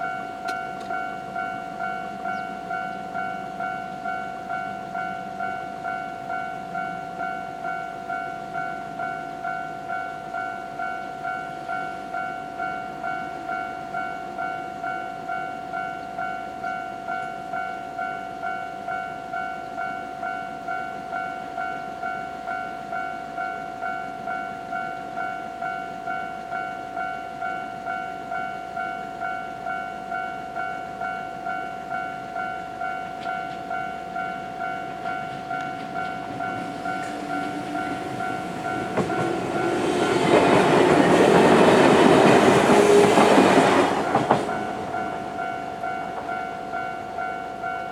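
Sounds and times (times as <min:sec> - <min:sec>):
level crossing warning bell: 0:00.0 - 0:47.9
train rumble: 0:31.0 - 0:47.9.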